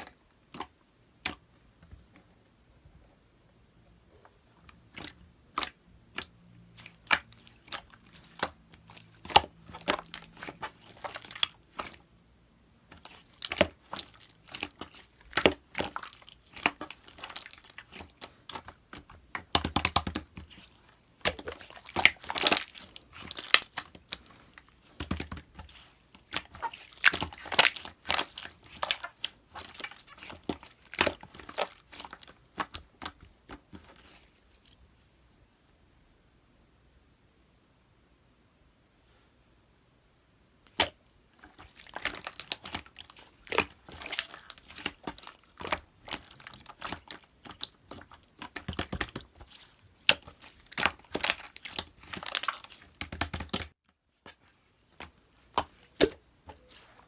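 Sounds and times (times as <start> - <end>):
slime popping and crackling: 13.0 - 20.6, 21.2 - 33.8, 40.7 - 53.8.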